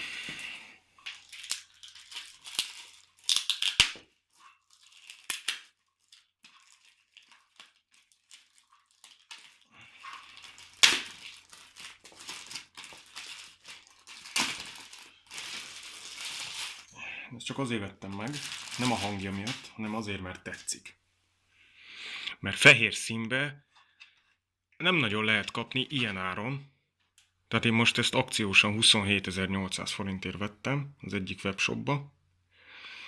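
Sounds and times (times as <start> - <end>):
packaging crinkling and rustling: 1.0 - 20.7.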